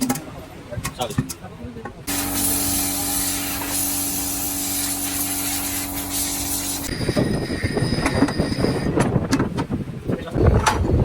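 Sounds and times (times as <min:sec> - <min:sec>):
loud spraying hiss: 0:02.1 - 0:07.0
machine hum: 0:02.1 - 0:07.8.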